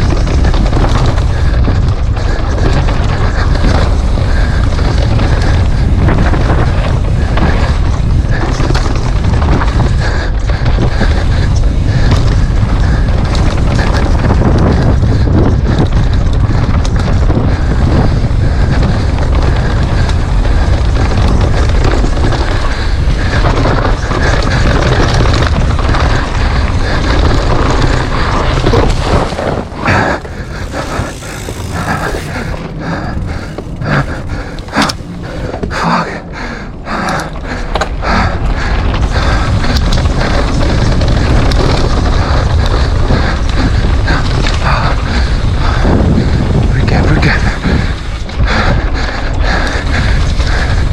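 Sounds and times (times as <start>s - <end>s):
bike knocks and clicks: 0.0s - 35.8s
mountain bike rattling: 0.0s - 50.9s
wind rushing over microphone: 0.0s - 50.9s.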